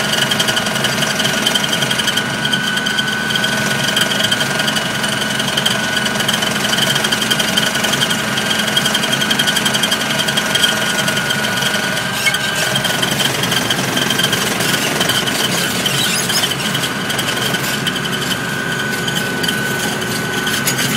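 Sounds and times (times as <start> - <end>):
vehicle engine running: 0.0 - 20.9
rattle: 5.5 - 20.9
steady high whine: 9.9 - 20.9.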